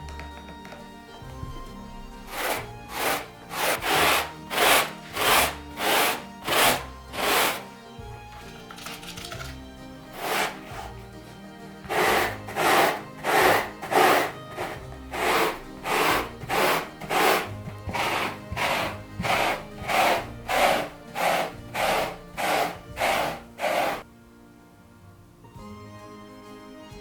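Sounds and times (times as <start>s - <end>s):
rhythmic scrubbing strokes: 1.5s - 8.5s, 9.8s - 24.1s.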